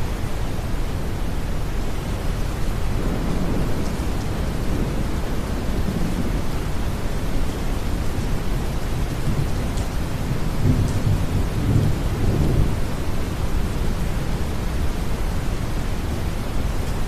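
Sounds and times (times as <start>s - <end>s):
steady rain: 0.0s - 17.0s
distant thunder rolling: 2.6s - 13.1s.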